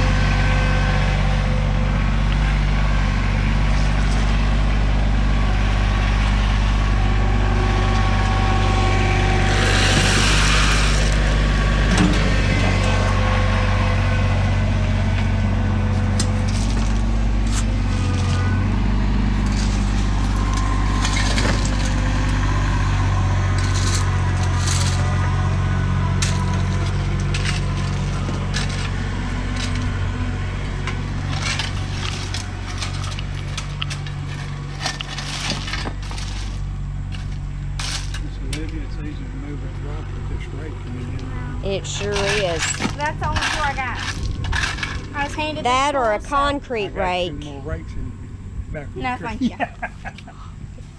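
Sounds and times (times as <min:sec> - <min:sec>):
tractor engine running: 0:00.0 - 0:50.9
gravel stones clattering: 0:15.9 - 0:22.6, 0:23.2 - 0:25.3, 0:26.1 - 0:38.2, 0:41.8 - 0:45.8.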